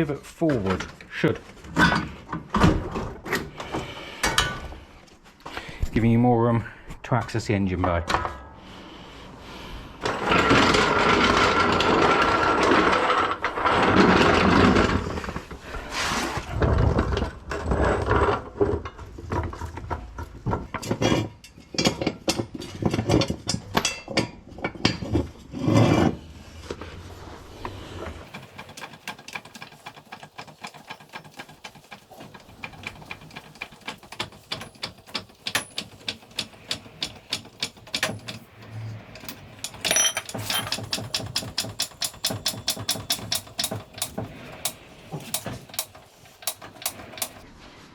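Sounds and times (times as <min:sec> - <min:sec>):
metal knocks and clatter: 0:17.1 - 0:25.4, 0:28.2 - 0:47.4.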